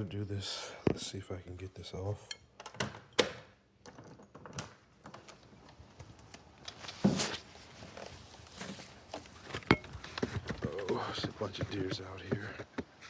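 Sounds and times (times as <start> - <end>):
small clicks and knocks: 2.6 - 7.0.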